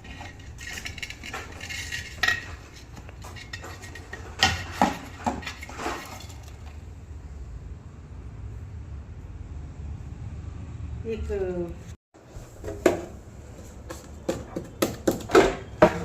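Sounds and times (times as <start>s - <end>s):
metal objects clinking: 0.0s - 6.6s.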